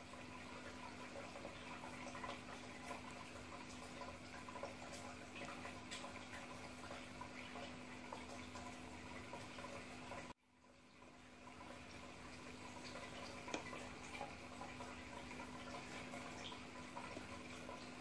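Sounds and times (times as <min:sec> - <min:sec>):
faint crackling with clicks: 0:00.6 - 0:10.3.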